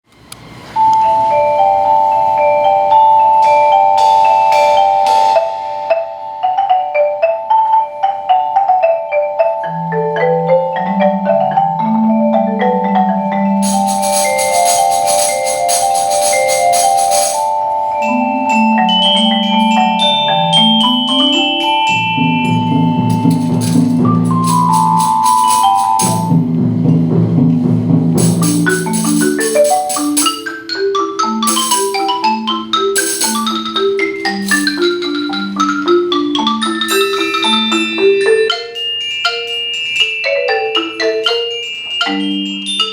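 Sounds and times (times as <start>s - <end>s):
mallet percussion ensemble: 0.8s - 42.9s
bright metallic shimmer: 13.6s - 17.8s, 36.9s - 38.5s.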